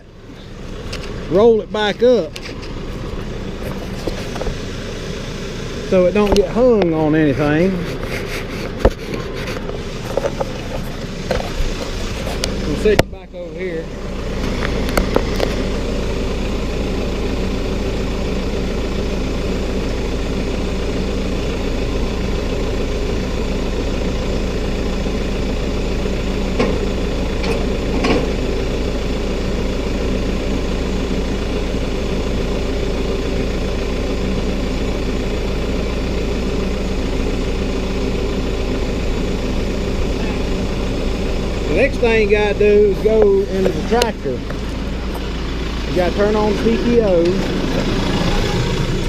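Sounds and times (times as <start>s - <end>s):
tractor engine idling: 0.0s - 49.0s.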